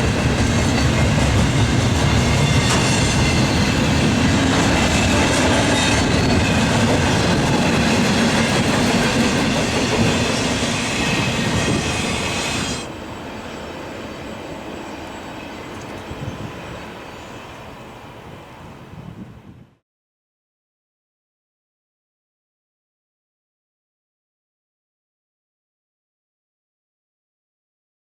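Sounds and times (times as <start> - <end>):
train wheels clattering on rails: 0.0 - 12.9.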